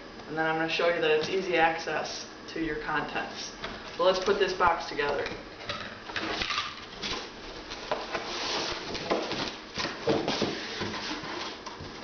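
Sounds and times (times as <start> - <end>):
cardboard rustling and scraping: 6.2 - 12.0
cardboard flaps knocking: 8.9 - 11.0.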